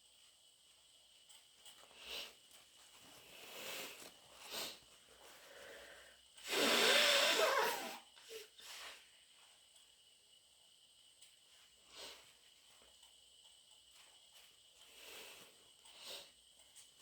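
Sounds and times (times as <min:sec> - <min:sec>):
person blowing nose: 0:06.4 - 0:08.4.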